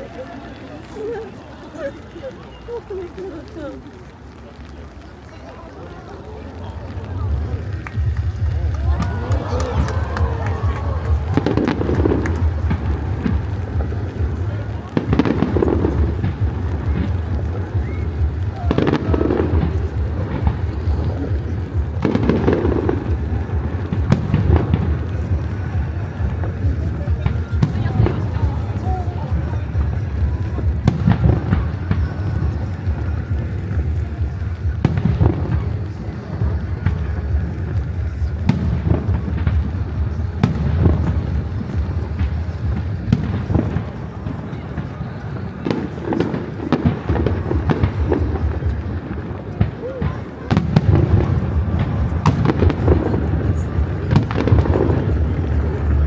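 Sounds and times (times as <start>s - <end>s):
firework bangs: 0.0s - 56.0s
firework crackling: 0.0s - 56.0s
low rumble: 6.6s - 43.9s.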